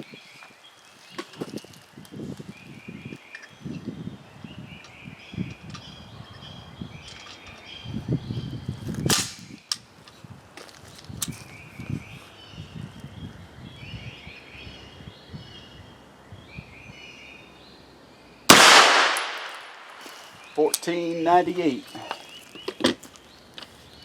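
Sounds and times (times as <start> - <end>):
gunshot with echo: 18.5 - 20.1.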